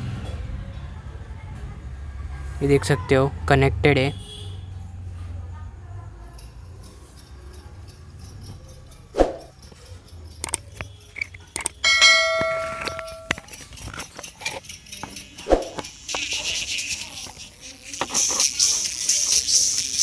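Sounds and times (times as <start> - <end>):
thin music from earbud: 6.2 - 20.0
handling clicks: 10.4 - 11.8
short chime of ringing tones: 11.8 - 13.4.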